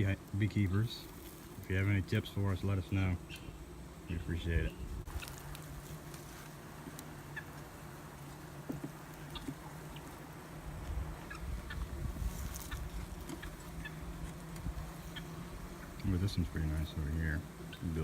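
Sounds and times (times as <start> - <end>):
bees humming: 0.0 - 18.0
light clicks of hive frames: 5.1 - 18.0.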